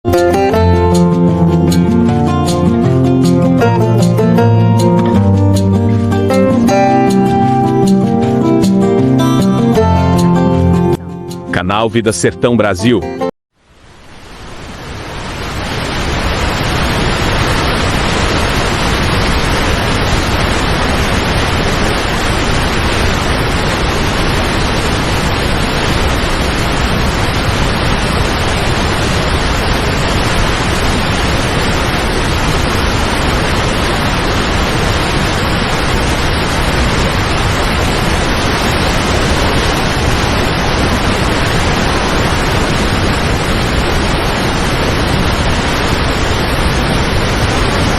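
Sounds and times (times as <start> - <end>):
waterfall rushing: 13.7 - 47.9.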